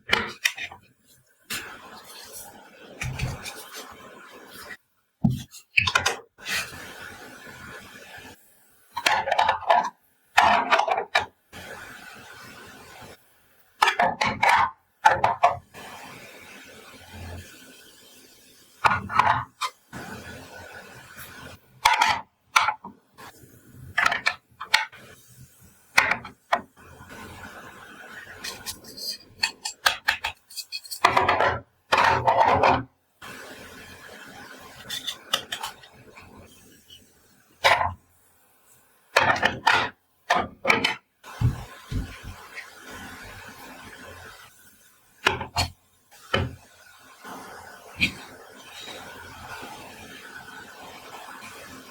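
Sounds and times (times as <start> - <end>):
rustling and scraping: 1.5 - 3.9, 28.4 - 32.9.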